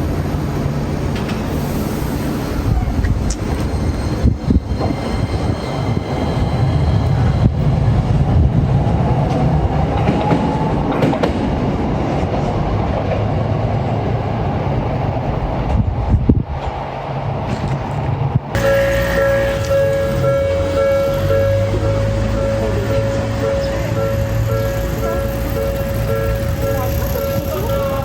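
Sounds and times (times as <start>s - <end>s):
faint tram whine: 0.0s - 17.4s, 18.0s - 28.0s
tram rumbling past: 0.0s - 28.0s
wheels clicking over rail joints: 18.6s - 28.0s.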